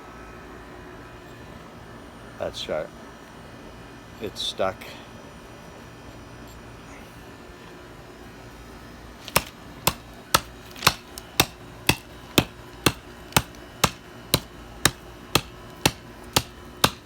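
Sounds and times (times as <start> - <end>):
hatchet chopping wood: 9.2 - 17.0.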